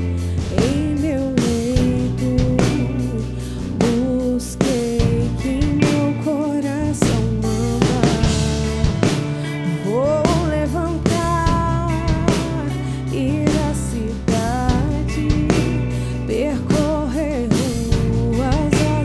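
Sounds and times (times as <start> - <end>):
bass: 0.0 - 19.0
drum kit: 0.0 - 19.0.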